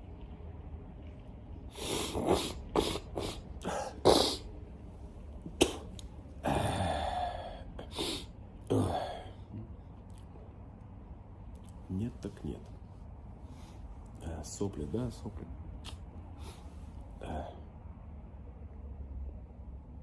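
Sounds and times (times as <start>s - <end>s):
person sneezing: 1.7s - 4.5s, 5.4s - 9.3s
person coughing: 1.8s - 4.4s, 5.5s - 7.2s.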